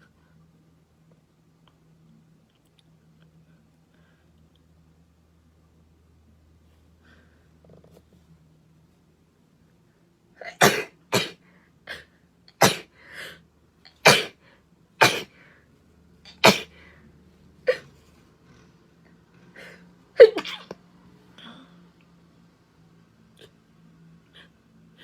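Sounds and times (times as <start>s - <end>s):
girl sneezing: 10.5s - 11.4s, 14.0s - 14.4s, 15.0s - 15.3s.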